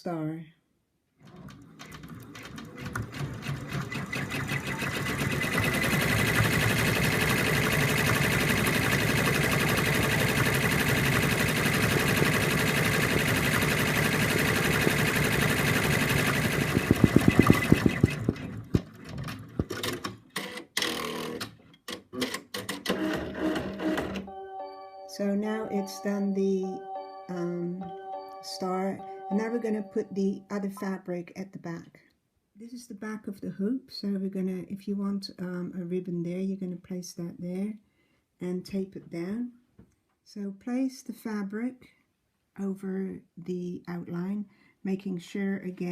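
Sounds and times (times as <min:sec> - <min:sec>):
embroidery machine stitching: 0:01.2 - 0:21.5, 0:22.2 - 0:24.3
clicks and knocks: 0:18.3 - 0:20.4.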